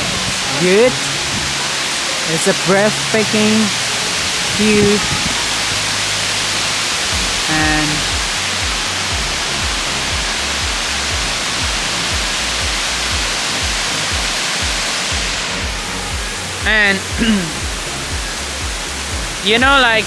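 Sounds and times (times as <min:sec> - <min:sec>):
music with repeating bass line: 0:00.0 - 0:20.0
waterfall rushing: 0:00.0 - 0:20.0.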